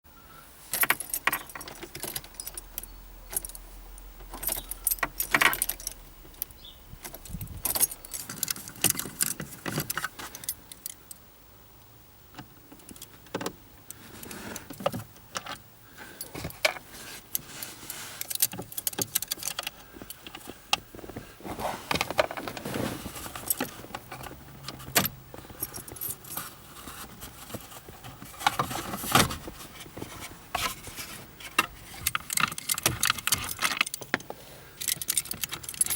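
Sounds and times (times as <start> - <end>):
car keys jangling: 0.7 - 11.2, 14.8 - 21.2, 21.9 - 30.1, 31.5 - 35.9
keys clicking at ignition: 0.7 - 11.2, 18.2 - 21.1, 23.2 - 26.6, 31.6 - 35.9.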